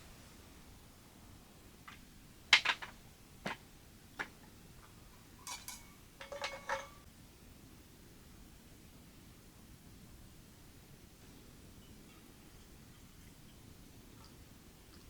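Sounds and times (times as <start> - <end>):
cookware knocking and clinking: 5.4 - 7.0.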